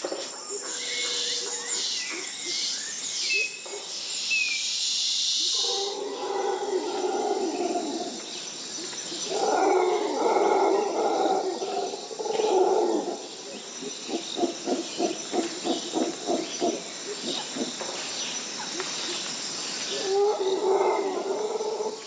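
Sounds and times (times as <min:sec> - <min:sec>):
insects hissing: 0:00.0 - 0:22.0
howler monkeys roaring: 0:05.5 - 0:08.3, 0:09.1 - 0:18.0, 0:19.9 - 0:22.0
monkey rhythmic grunts: 0:13.8 - 0:18.0.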